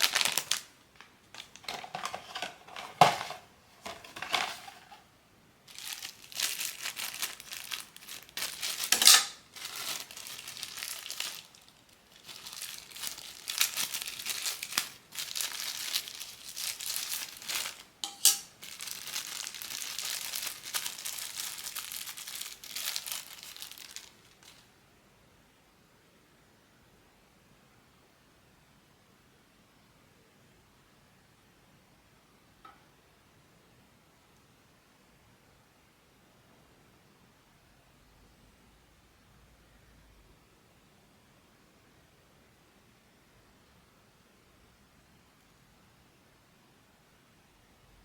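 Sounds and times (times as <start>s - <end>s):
packaging crumpling and crackling: 0.0s - 5.0s, 5.7s - 24.7s.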